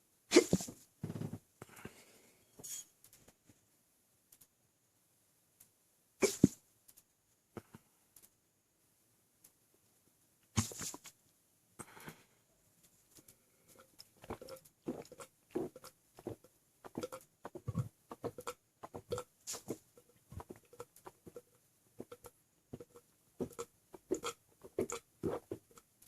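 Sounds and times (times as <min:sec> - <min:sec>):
person gulping milk: 0:13.8 - 0:25.9.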